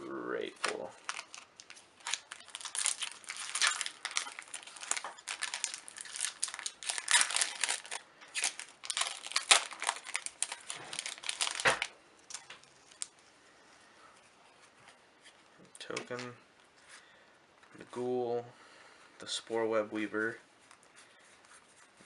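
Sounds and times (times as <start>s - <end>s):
foil wrapper crinkling and tearing: 0.4s - 13.3s.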